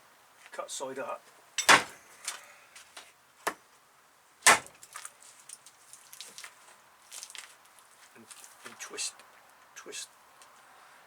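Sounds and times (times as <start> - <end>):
sharp knocks: 1.6 - 2.0, 4.4 - 4.7
light clicks and rustling: 4.8 - 9.7.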